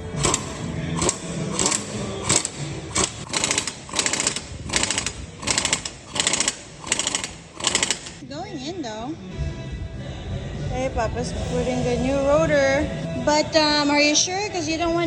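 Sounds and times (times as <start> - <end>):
socket ratchet clicking: 0.2 - 8.2.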